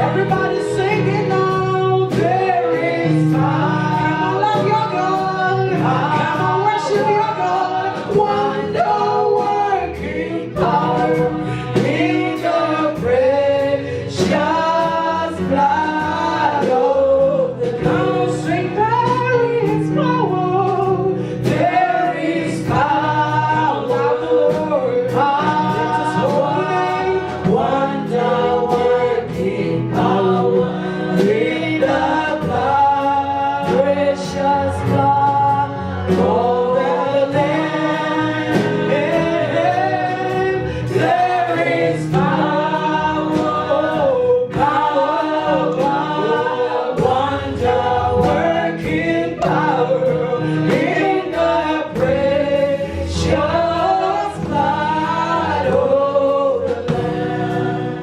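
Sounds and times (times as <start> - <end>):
choir singing gospel: 0.0 - 58.0
instrumental accompaniment with beat: 0.0 - 58.0.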